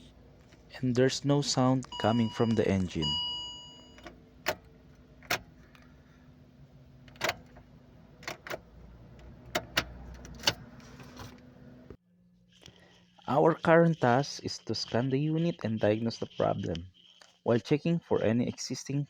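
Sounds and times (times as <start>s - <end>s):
faint steady hum: 0.0s - 9.3s.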